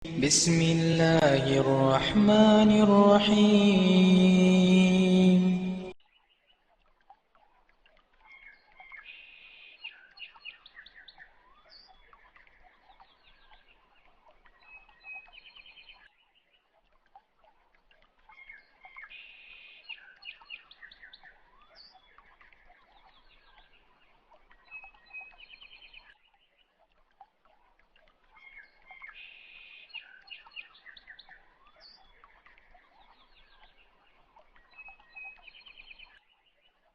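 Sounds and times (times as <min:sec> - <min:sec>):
faint birdsong: 0:28.0 - 0:36.9.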